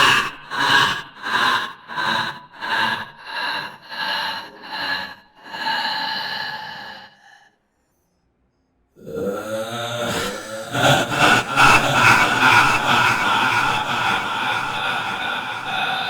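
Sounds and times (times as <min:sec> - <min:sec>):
horror laugh: 0:09.0 - 0:16.0.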